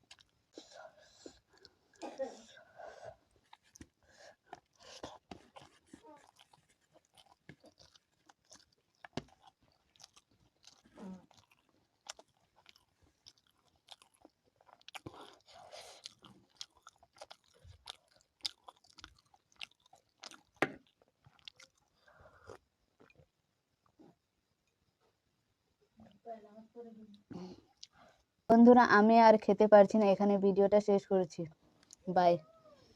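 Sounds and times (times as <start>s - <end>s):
close chewing: 0.0s - 23.3s, 27.1s - 28.1s, 31.8s - 32.1s.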